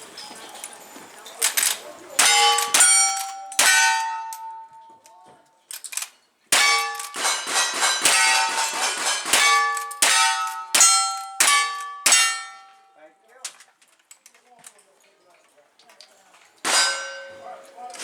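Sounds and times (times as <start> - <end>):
steel targets clanging: 0.0 - 5.1, 5.7 - 13.0, 16.6 - 18.0.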